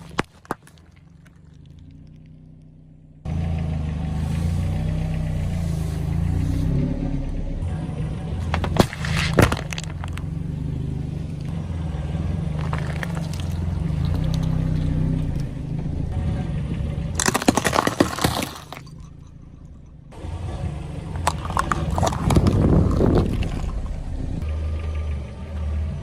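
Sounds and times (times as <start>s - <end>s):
objects cracking under tyres: 0.0s - 2.8s, 8.4s - 11.6s, 12.2s - 15.9s, 17.1s - 20.1s, 21.1s - 24.4s
car engine running low: 0.0s - 26.0s.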